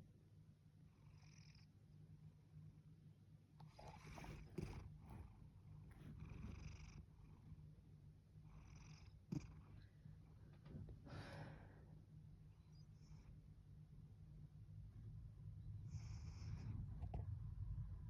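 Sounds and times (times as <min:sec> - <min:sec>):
cat purring: 0:03.6 - 0:10.7.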